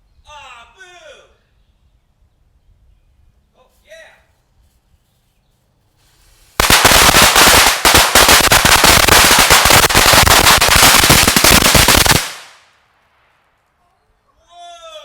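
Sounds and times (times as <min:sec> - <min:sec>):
firecrackers crackling: 0:06.0 - 0:13.6.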